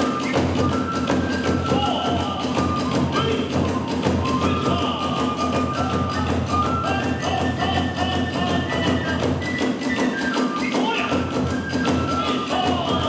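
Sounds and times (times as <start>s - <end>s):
drums beating: 0.0s - 10.2s
bamboo flute melody: 0.0s - 13.0s.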